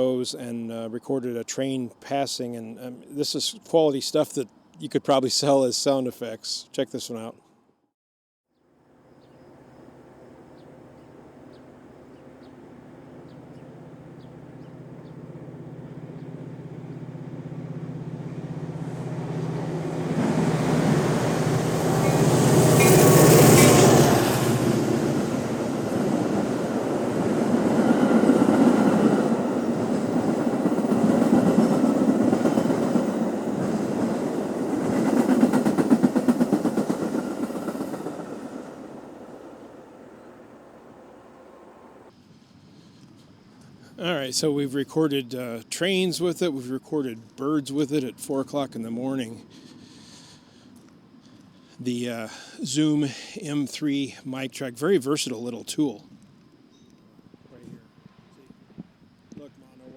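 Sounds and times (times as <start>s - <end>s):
train passing: 8.8s - 42.1s
wheels clattering over rail joints: 10.9s - 42.1s.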